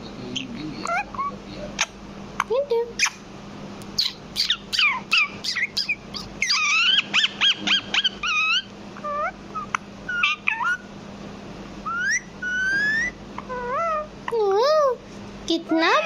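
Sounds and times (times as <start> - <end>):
parrot chirping and squawking: 0.4 - 2.0, 2.9 - 3.2, 3.9 - 10.9, 11.8 - 15.0, 15.7 - 16.0.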